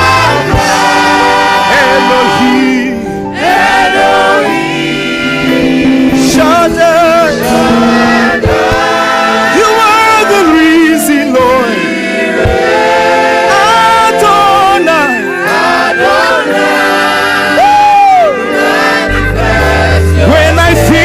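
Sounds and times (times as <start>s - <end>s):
gospel choir singing: 0.0s - 21.0s
deep bass: 4.5s - 10.4s, 19.0s - 21.0s.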